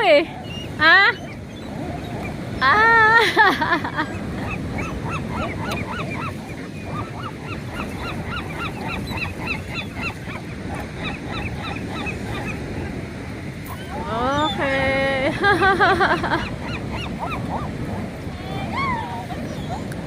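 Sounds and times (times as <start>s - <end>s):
flock of birds calling: 0.0s - 3.0s, 4.0s - 17.8s
low background rumble: 0.0s - 20.0s.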